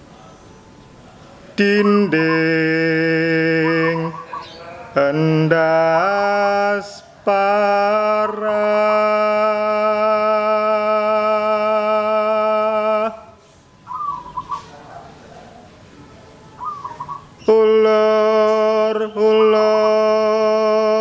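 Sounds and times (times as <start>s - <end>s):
dove cooing: 1.6s - 5.0s, 13.8s - 15.8s, 16.5s - 17.6s.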